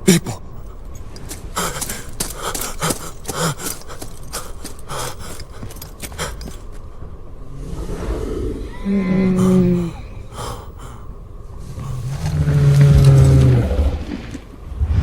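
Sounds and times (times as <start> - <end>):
man breathing heavily: 0.0 - 7.4, 9.3 - 12.4
scuffing footsteps: 0.1 - 7.0.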